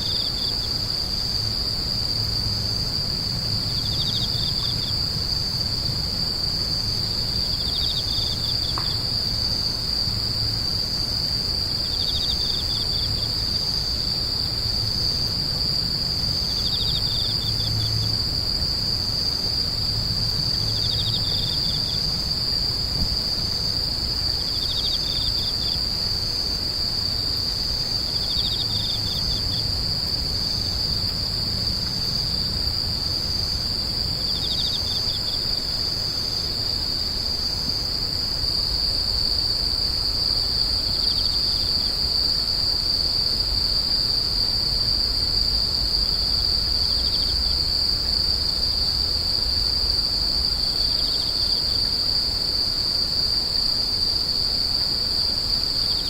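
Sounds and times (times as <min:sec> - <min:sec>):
insect pulsed trill: 0:23.7 - 0:36.8.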